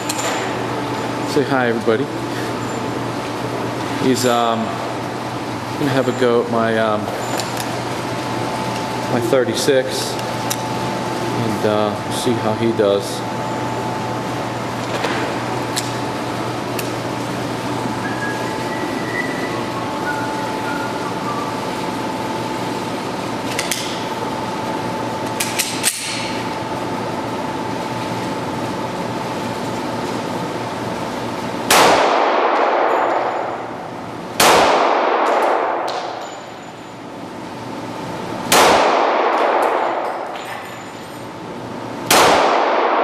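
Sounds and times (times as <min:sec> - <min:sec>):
steady hum: 0:00.0 - 0:43.0
pistol shots with ringing decay: 0:31.7 - 0:33.6, 0:34.4 - 0:35.9, 0:38.5 - 0:40.0, 0:42.1 - 0:43.0.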